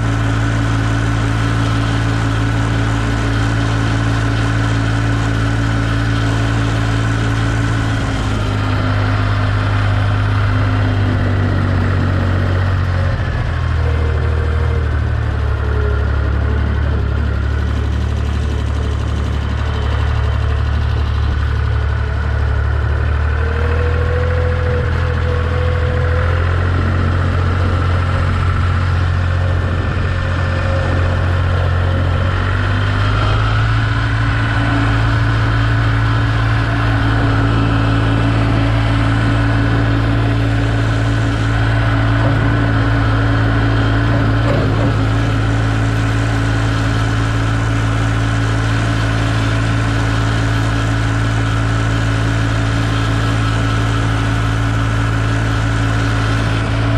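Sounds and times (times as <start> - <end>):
tractor engine running: 0.0 - 56.9.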